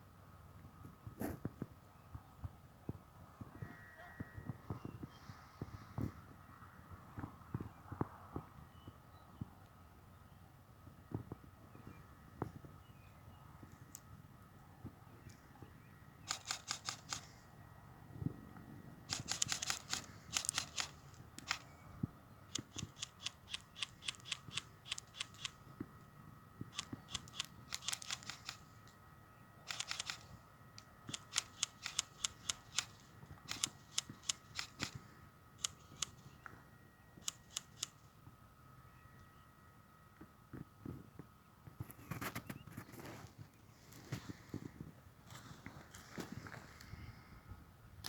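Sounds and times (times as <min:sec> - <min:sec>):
faint high hum: 0:00.0 - 0:48.0
airsoft guns firing bursts: 0:19.1 - 0:21.8.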